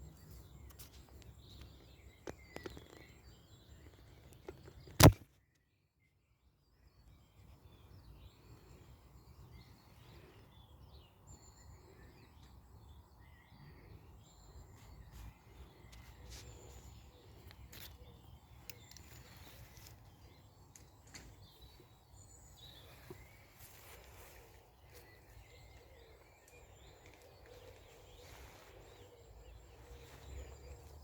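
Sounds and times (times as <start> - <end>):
small birds chirping: 0.0 - 31.0
sharp clicks: 4.8 - 5.2.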